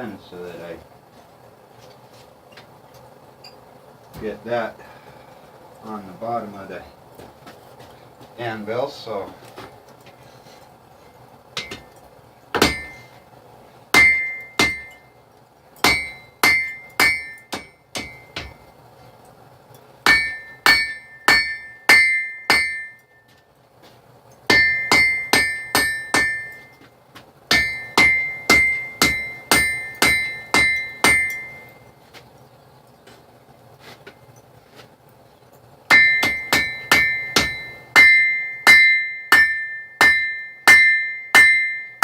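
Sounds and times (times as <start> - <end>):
hammer striking steel on anvil: 11.6 - 12.0, 12.6 - 13.1, 14.0 - 15.1, 15.8 - 18.6, 20.0 - 23.4, 24.5 - 26.9, 27.5 - 31.8, 35.9 - 42.0.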